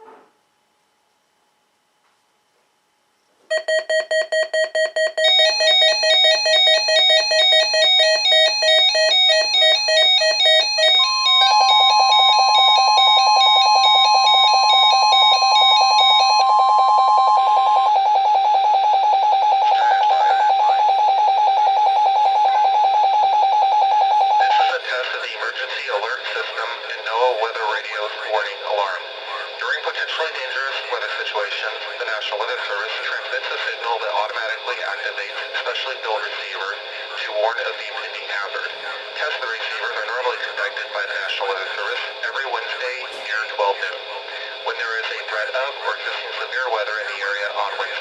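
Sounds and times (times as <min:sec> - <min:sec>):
pulsing electronic beeps: 0:03.5 - 0:24.7
lower pulsing alarm tone: 0:03.5 - 0:25.1
steady warning alarm tone: 0:03.5 - 0:48.0.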